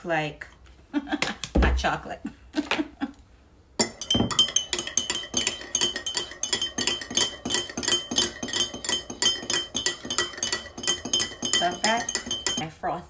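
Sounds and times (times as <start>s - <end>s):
spoon clinking against cup: 3.8s - 12.7s.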